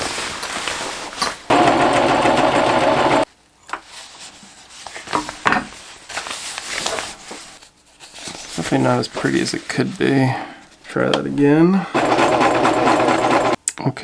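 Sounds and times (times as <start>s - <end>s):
fabric rustling: 0.0s - 1.5s, 3.8s - 11.7s
sewing machine stitching: 1.5s - 3.3s, 11.9s - 13.6s.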